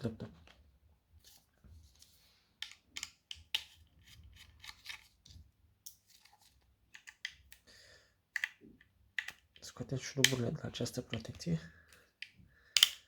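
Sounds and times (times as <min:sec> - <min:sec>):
hands handling plastic laptop case: 0:00.3 - 0:07.6.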